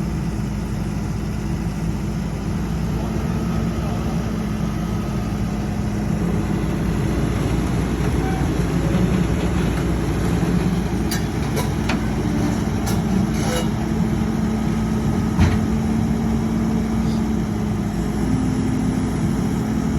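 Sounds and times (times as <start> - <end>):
excavator diesel engine running: 0.0 - 19.9
metal knocks and clanks: 10.8 - 13.9, 15.3 - 15.8.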